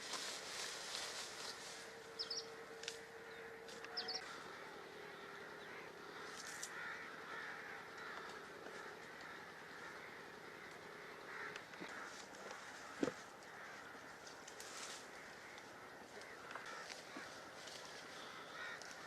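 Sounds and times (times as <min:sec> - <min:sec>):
birds chirping: 0:00.0 - 0:19.0
outdoor background noise: 0:00.0 - 0:19.0.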